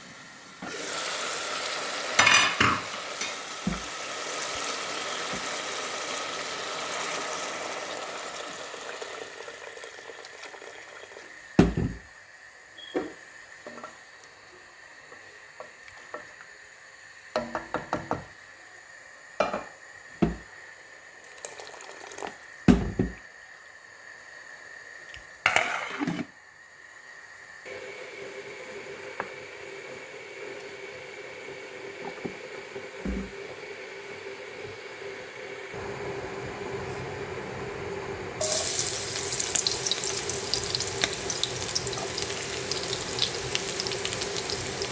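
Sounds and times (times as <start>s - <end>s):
water running from a tap: 0.7s - 11.5s, 38.4s - 44.9s
pots and utensils clattering: 2.2s - 3.9s.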